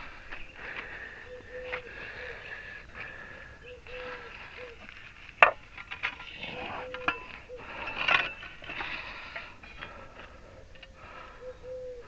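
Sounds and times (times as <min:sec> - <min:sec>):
dove cooing: 0:00.0 - 0:12.0
metal parts clinking and scraping: 0:04.8 - 0:10.0.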